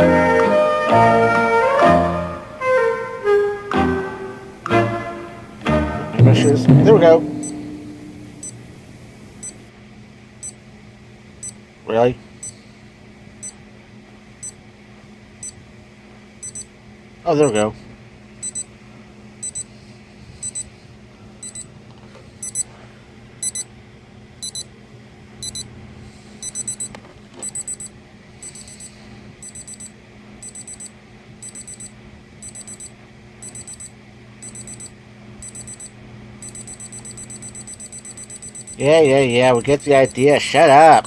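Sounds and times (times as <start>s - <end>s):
alarm clock beeping: 6.3s - 8.7s, 16.4s - 16.7s, 18.4s - 18.7s, 19.4s - 19.7s, 20.4s - 20.7s, 21.4s - 21.6s, 22.4s - 22.7s, 23.4s - 23.7s, 24.4s - 24.7s, 25.4s - 25.7s, 26.4s - 40.9s.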